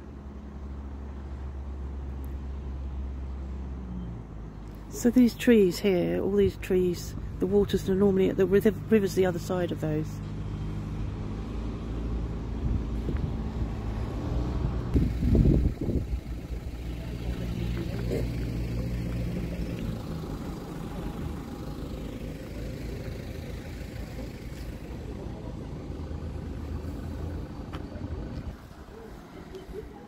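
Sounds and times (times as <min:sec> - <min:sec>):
vehicle engine humming: 0:00.0 - 0:30.0
low rumble of noise: 0:06.1 - 0:30.0.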